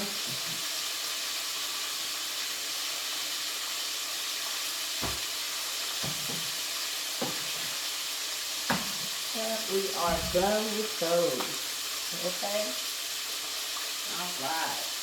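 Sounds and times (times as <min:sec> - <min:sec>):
food sizzling in hot oil: 0:00.0 - 0:15.0
kitchen items knocking: 0:06.0 - 0:06.5, 0:10.0 - 0:10.5.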